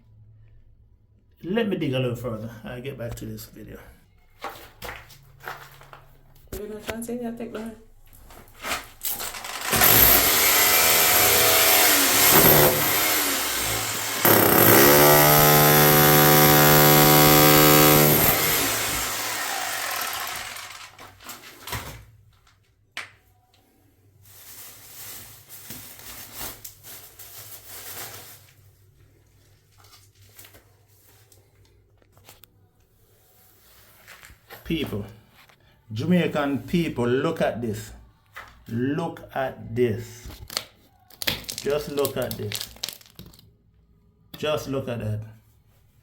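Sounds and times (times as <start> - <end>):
electric power tool whining: 9.2 - 21.1.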